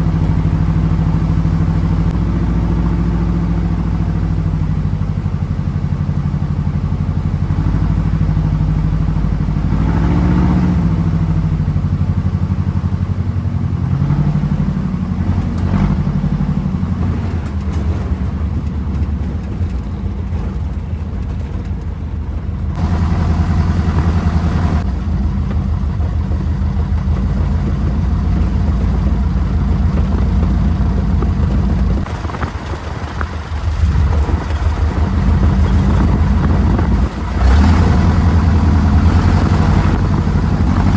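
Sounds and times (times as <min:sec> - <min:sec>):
aircraft piston engine running: 0:16.4 - 0:40.9.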